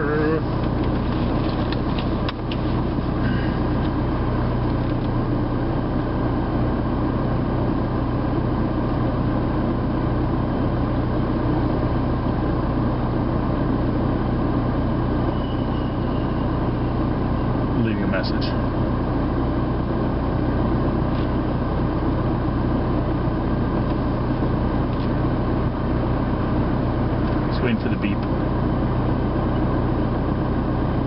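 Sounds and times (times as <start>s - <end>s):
air conditioning running: 0.0s - 31.0s
car road and engine noise: 0.0s - 31.0s.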